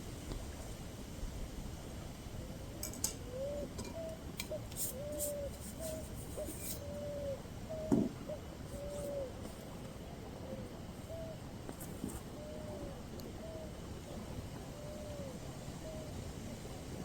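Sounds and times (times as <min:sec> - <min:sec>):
bird hooting: 0:03.2 - 0:09.5, 0:10.4 - 0:11.4, 0:12.3 - 0:16.2.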